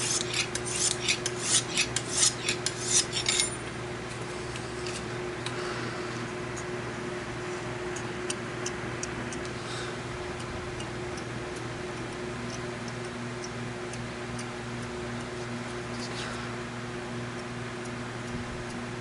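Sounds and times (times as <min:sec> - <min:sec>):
hone scraping knife edge: 0:00.0 - 0:03.6
steady low hum: 0:00.0 - 0:19.0.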